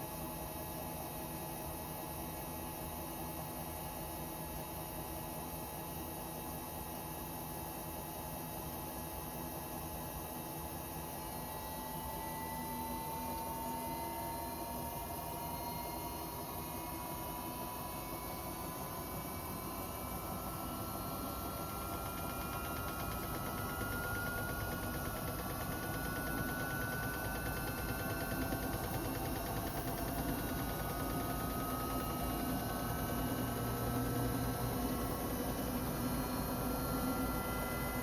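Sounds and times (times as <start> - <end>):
rising whine of spinning drum: 0.0 - 38.0
washing machine motor hum: 11.3 - 38.0.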